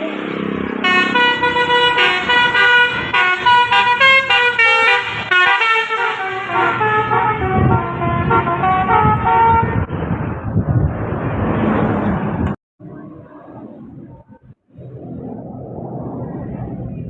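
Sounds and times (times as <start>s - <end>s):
bus engine and road noise: 0.0s - 17.0s
bus horn playing a tune: 0.8s - 9.9s.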